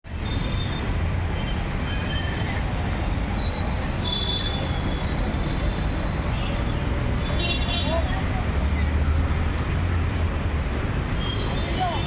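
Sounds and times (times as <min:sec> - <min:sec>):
vehicle rumble and rattle: 0:04.8 - 0:12.0.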